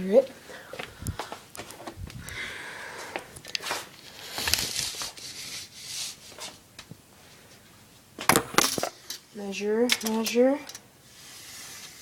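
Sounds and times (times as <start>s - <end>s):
rustling scrapes: 3.6s - 6.6s, 11.0s - 12.0s.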